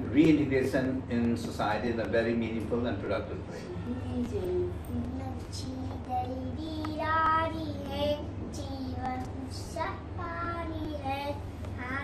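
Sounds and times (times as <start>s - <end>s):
young child singing: 4.9s - 12.0s.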